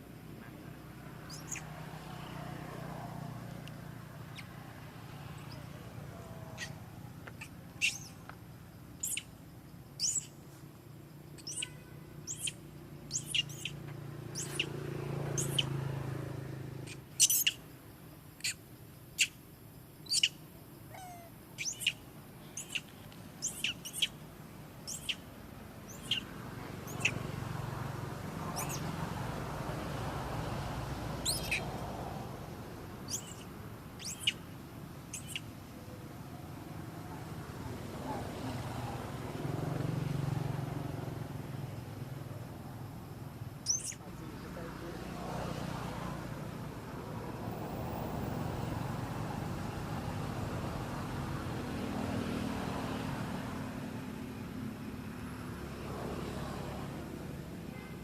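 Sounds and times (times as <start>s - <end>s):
birds chirping: 0.4s - 1.9s, 4.2s - 10.6s, 11.2s - 15.8s, 16.7s - 17.8s, 18.4s - 19.4s, 20.0s - 32.0s, 32.9s - 39.2s, 43.6s - 45.0s.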